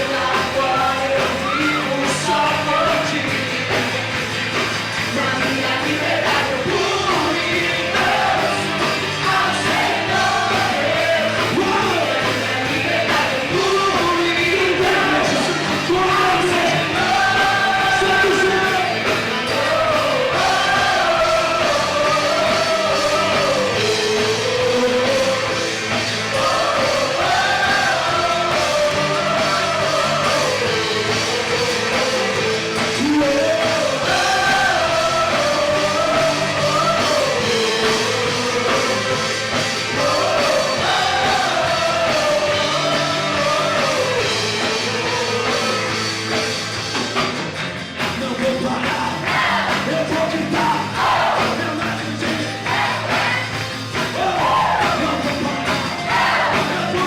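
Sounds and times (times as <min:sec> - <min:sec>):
rock worship band music: 0:00.0 - 0:57.0.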